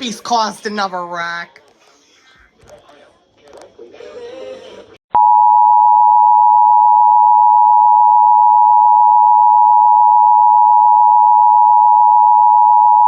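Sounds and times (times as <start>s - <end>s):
two-tone alarm: 5.2s - 13.0s.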